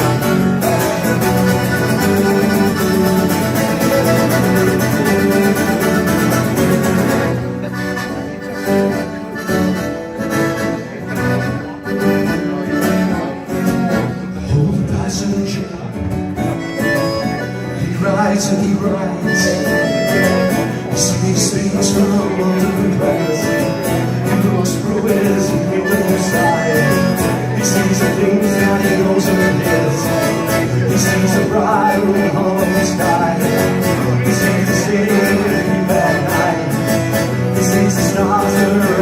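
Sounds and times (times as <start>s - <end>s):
bluegrass band playing: 0.0s - 39.0s.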